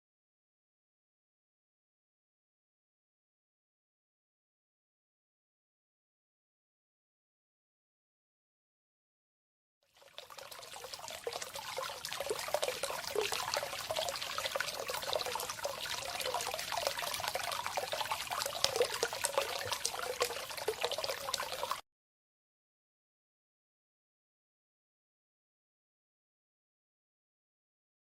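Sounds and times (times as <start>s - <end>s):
water flowing and splashing: 10.0s - 21.8s.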